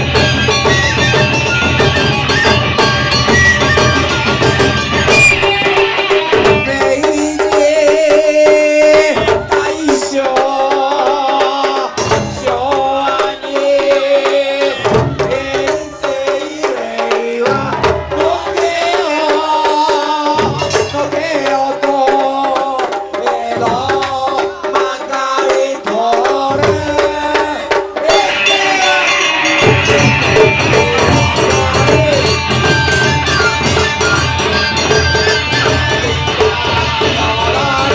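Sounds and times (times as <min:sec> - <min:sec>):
wavering melody: 0:00.0 - 0:07.1, 0:28.1 - 0:37.9
folk band drums: 0:00.0 - 0:37.9.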